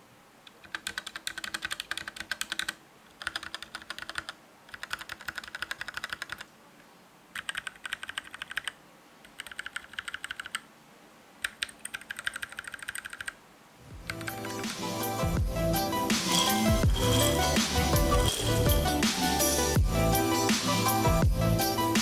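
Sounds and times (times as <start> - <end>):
mechanical keyboard typing: 0.5 - 6.5, 7.4 - 10.6, 11.4 - 13.4, 16.3 - 17.2, 18.3 - 18.6.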